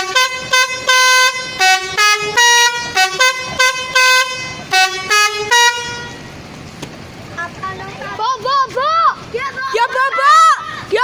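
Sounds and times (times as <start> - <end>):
multi-tone bus horn melody: 0.0 - 6.4.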